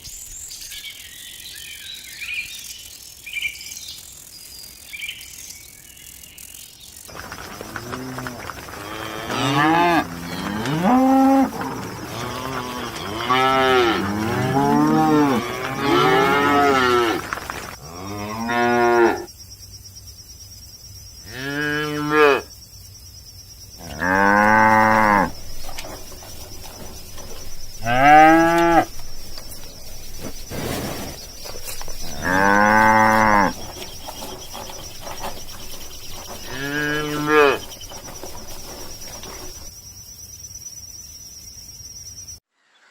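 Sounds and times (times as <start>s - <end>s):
cattle mooing: 7.1s - 17.3s, 23.8s - 39.7s.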